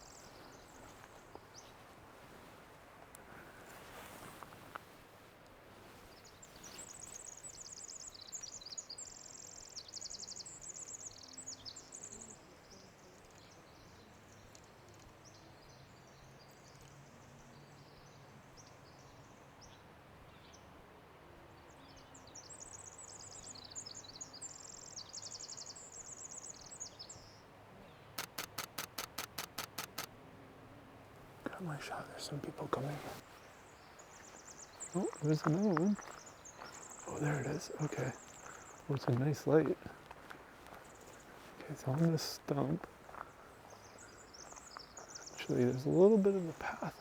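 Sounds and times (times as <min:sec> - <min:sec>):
camera shutter clicks: 0:28.2 - 0:30.1
wren singing: 0:31.5 - 0:39.8.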